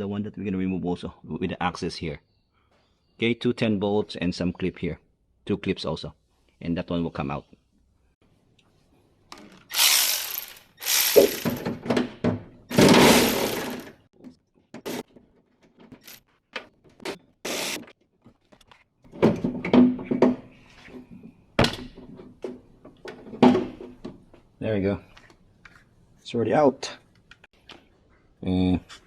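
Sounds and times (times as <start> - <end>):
tool rasping: 9.7 - 11.6, 17.5 - 17.9.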